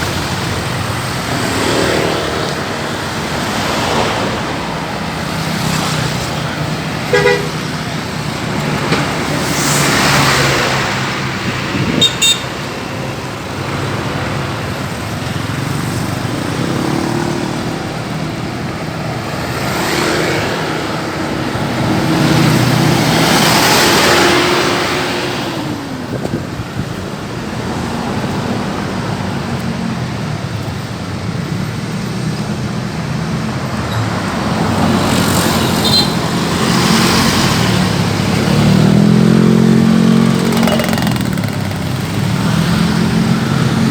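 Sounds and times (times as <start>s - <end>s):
vehicles passing: 0.0s - 43.9s
car horn toot: 7.1s - 7.7s, 11.9s - 12.6s.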